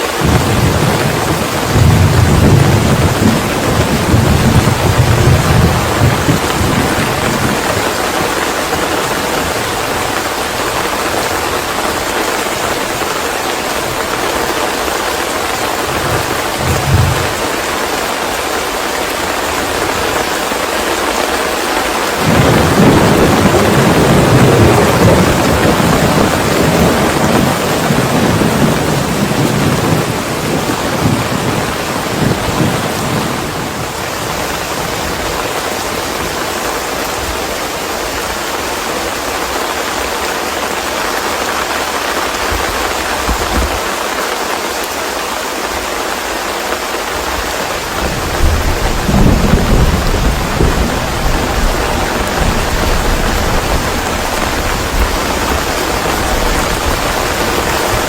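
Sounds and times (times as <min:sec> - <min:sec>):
steady rain: 0:00.0 - 0:58.0
low rolling thunder: 0:00.2 - 0:13.0, 0:15.6 - 0:17.9, 0:22.2 - 0:36.3, 0:47.9 - 0:58.0.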